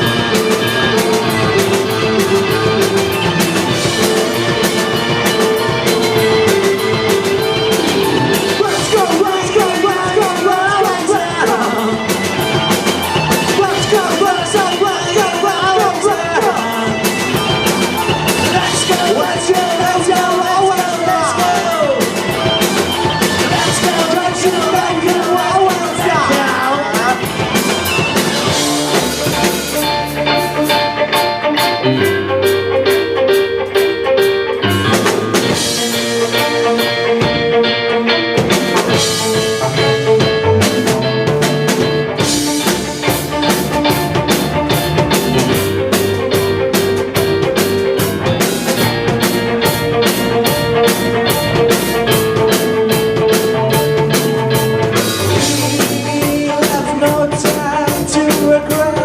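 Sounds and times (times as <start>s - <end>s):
bass guitar: 0.0s - 59.0s
drum kit beat: 0.0s - 59.0s
electric guitar: 0.0s - 59.0s.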